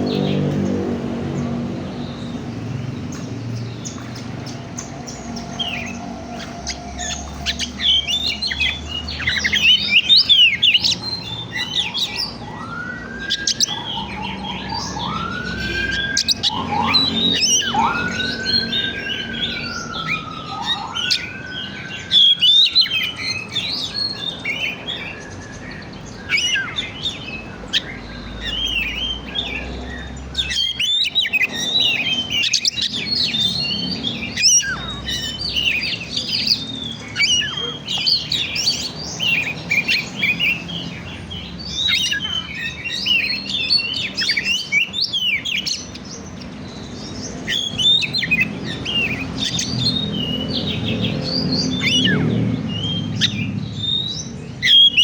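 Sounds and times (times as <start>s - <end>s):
bird singing chirps and trills: 0.0s - 55.0s
long slurred bird whistles: 5.4s - 26.9s.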